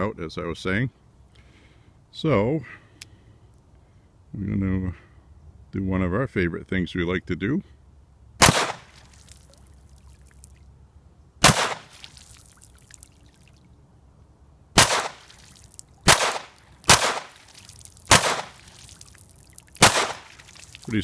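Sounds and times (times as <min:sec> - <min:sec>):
pistol shots: 0:08.4 - 0:09.0, 0:11.4 - 0:12.0, 0:14.8 - 0:15.4, 0:16.0 - 0:17.5, 0:18.1 - 0:18.8, 0:19.8 - 0:20.4.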